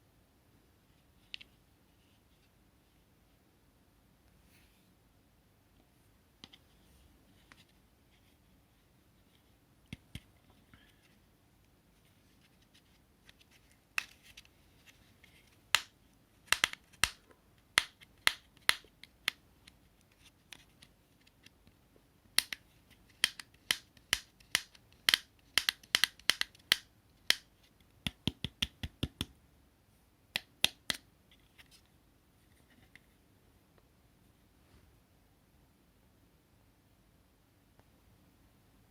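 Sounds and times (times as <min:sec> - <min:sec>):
clicks and taps on hard objects: 0:23.2 - 0:29.4.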